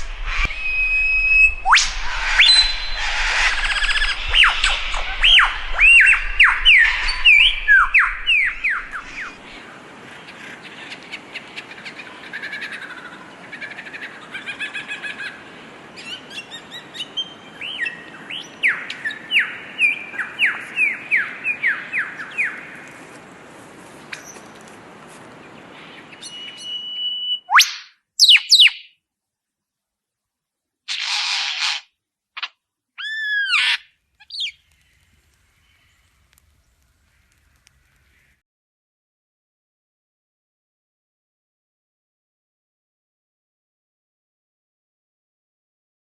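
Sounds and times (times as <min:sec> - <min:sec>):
bird singing: 0:02.4 - 0:09.6, 0:16.0 - 0:22.9, 0:25.5 - 0:29.0, 0:33.0 - 0:38.4.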